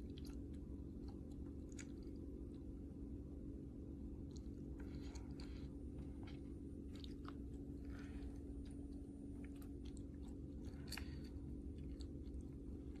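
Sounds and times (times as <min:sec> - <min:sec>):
steady low hum: 0:00.0 - 0:13.0.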